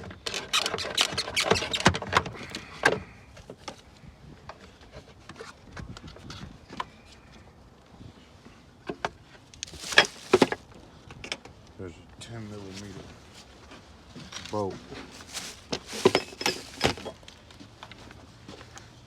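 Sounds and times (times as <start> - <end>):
wiring connectors clicking and rattling: 15.2 - 17.6.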